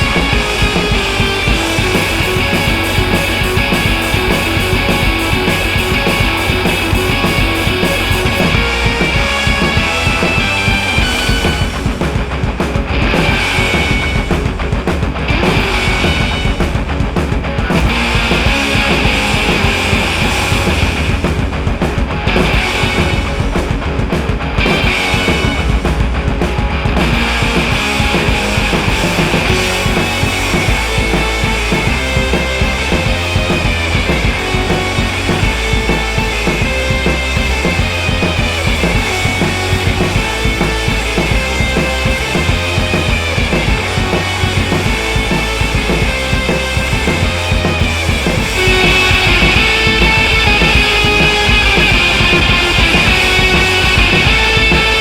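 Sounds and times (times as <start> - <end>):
rock music with drums and bass: 0.0 - 55.0.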